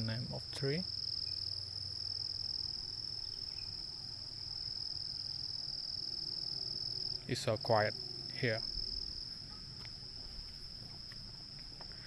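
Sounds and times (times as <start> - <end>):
insects droning: 0.0 - 12.0.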